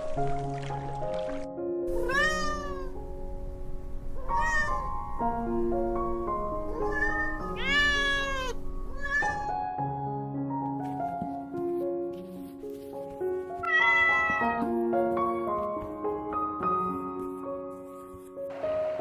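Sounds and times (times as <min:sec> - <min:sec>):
soft background music: 0:00.0 - 0:19.0
cat meowing: 0:01.9 - 0:03.2, 0:04.2 - 0:05.4, 0:06.4 - 0:09.6, 0:13.6 - 0:14.7.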